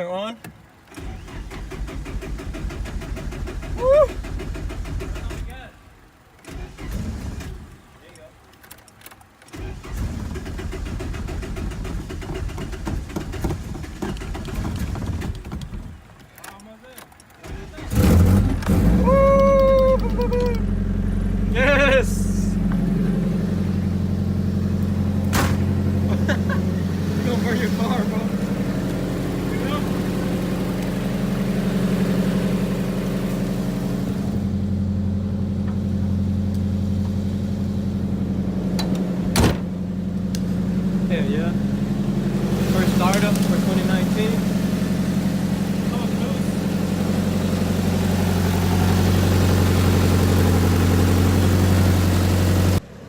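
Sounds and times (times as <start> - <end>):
engine starting: 0.8 - 5.7, 6.4 - 7.8, 9.4 - 16.0, 17.4 - 19.1
engine running rough with knocking: 1.0 - 7.6, 9.6 - 16.2, 17.5 - 52.9.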